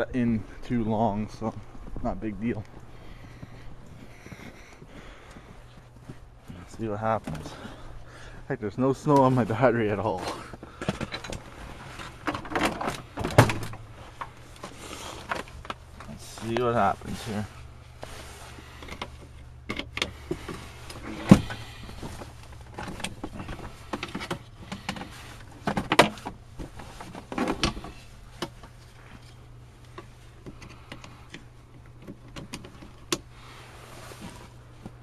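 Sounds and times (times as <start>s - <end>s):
clicks and knocks of handling tools: 10.2s - 16.7s, 18.8s - 33.3s.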